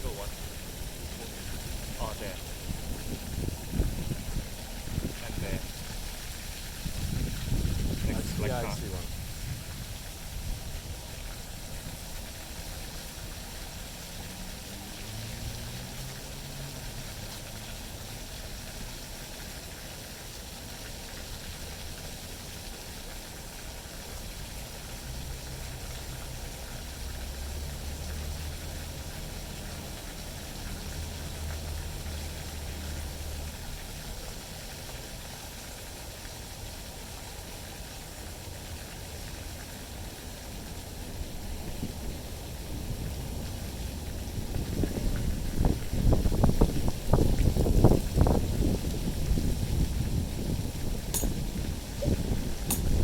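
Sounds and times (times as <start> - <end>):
wind buffeting microphone: 0.2 - 12.3, 41.2 - 53.0.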